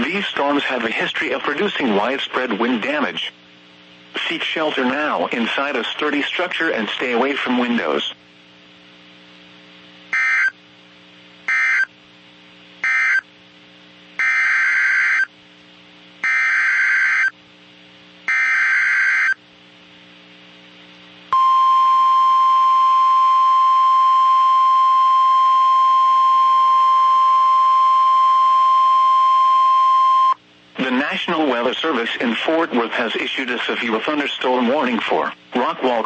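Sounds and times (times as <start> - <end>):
faint radio hum: 0.0 - 10.5, 30.6 - 36.0.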